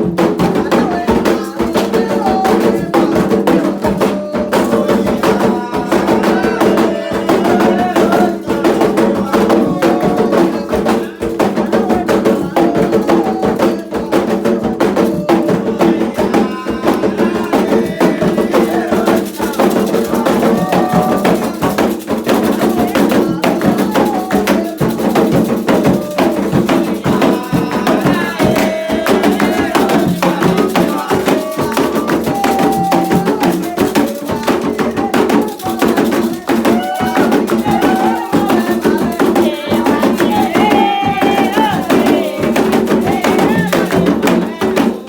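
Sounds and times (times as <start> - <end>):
clacking percussion beat: 0.0 - 45.0
fast hand drumming: 0.0 - 45.0
voices singing: 0.0 - 45.0.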